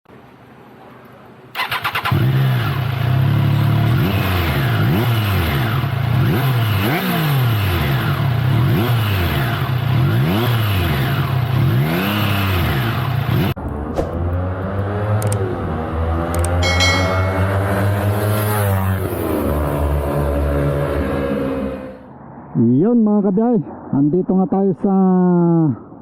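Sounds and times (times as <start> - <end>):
motorcycle engine starting and revving: 1.6 - 16.6.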